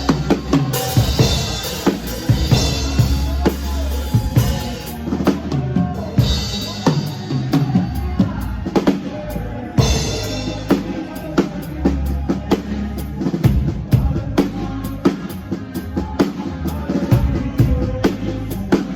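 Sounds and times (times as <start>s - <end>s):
bass line: 0.0s - 18.9s
drum kit beat: 0.0s - 18.9s.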